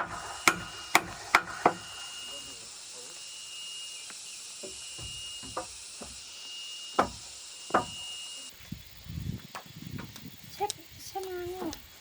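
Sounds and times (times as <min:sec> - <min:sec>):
tool striking wood: 0:00.0 - 0:01.9, 0:04.6 - 0:06.3, 0:06.9 - 0:08.1
high insect buzz: 0:00.0 - 0:12.0.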